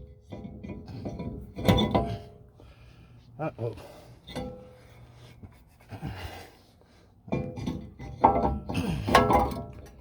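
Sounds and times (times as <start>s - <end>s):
metallic clanks of brake rotor: 0.0s - 2.5s, 7.2s - 10.0s.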